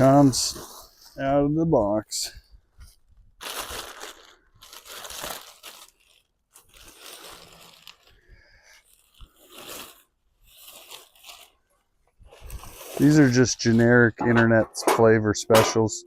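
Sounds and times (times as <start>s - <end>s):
cardboard crinkling and tearing: 3.4s - 8.2s, 8.8s - 11.7s, 12.3s - 13.7s.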